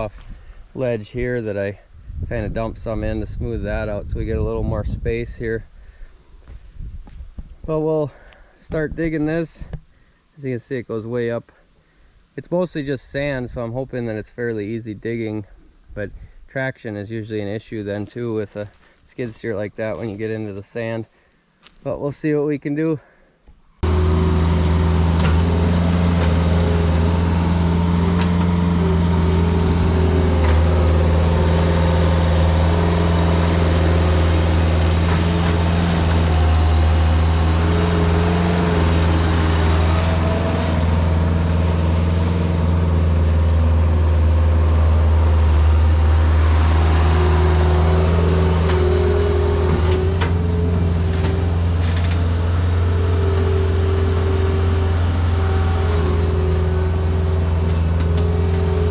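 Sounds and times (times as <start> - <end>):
loader engine running: 23.8 - 58.9.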